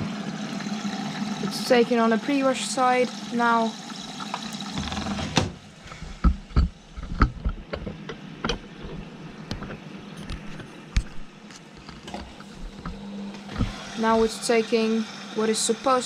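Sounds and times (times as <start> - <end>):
washing machine drawing in water: 0.0 - 5.7, 12.1 - 16.0.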